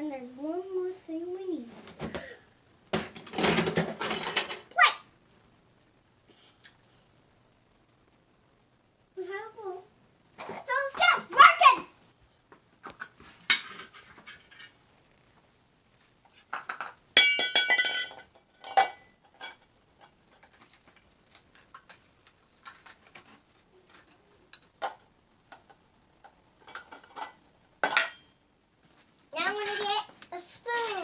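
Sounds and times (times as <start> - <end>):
toy pots knocking and clinking: 3.0 - 4.8, 16.5 - 20.6, 24.6 - 28.4.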